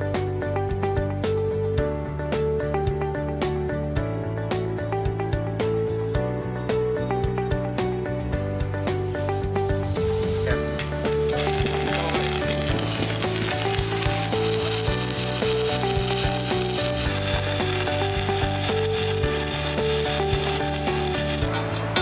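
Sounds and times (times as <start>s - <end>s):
background music: 0.0s - 22.0s
welding arc crackling: 10.6s - 21.6s.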